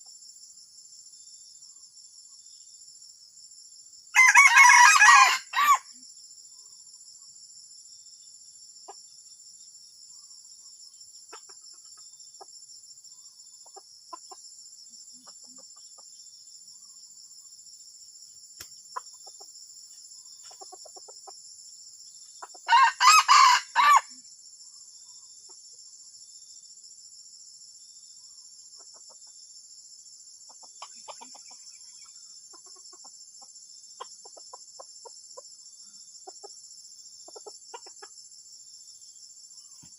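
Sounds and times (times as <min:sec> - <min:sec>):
rooster crowing: 0:04.2 - 0:05.9, 0:22.6 - 0:24.1
soft clucks: 0:20.4 - 0:21.4, 0:30.5 - 0:31.6, 0:37.3 - 0:38.2.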